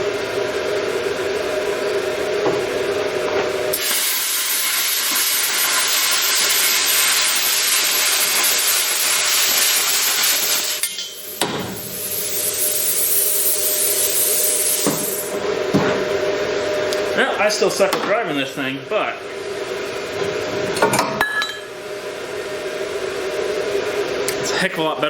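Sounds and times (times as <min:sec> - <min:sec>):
machine humming: 0:00.0 - 0:24.6
plasma cutter hissing: 0:03.7 - 0:15.4.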